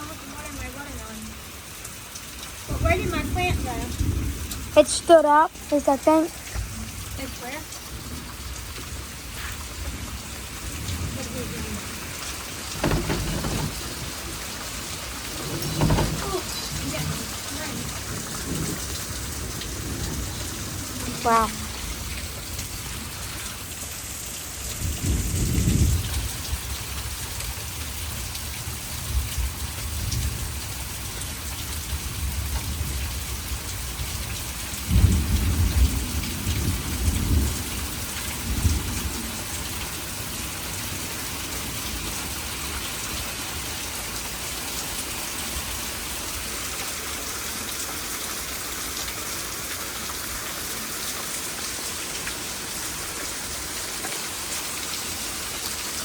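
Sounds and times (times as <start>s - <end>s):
heavy rain pouring: 0.0s - 56.0s
thunder rumbling: 2.6s - 23.4s, 24.8s - 39.6s.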